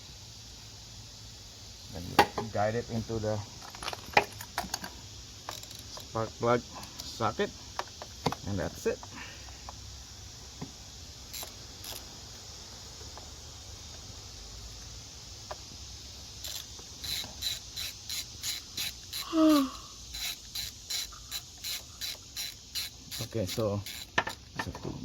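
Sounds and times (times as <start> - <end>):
faint hiss: 0.0 - 25.0
ratchet wrench clicking: 3.7 - 6.1, 11.3 - 12.1, 16.4 - 24.5.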